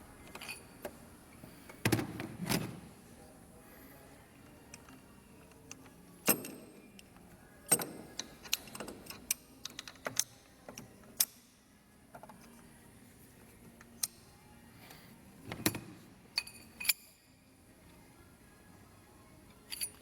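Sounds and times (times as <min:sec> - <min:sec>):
metallic clinks of hand tools: 0:16.4 - 0:17.4, 0:19.7 - 0:20.0.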